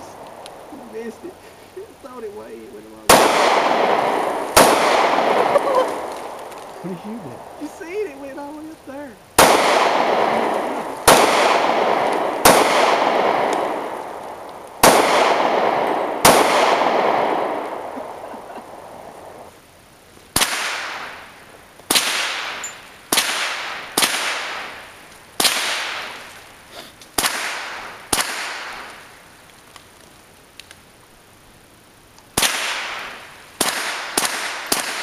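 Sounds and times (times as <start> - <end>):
gunshots with echo: 3.1 - 7.6, 9.4 - 14.2, 14.8 - 18.8, 21.9 - 24.8, 25.4 - 26.2, 32.4 - 35.0.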